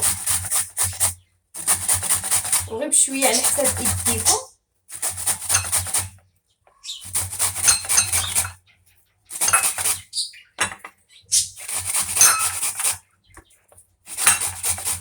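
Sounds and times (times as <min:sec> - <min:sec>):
knife clinking against dish: 0:12.2 - 0:12.6.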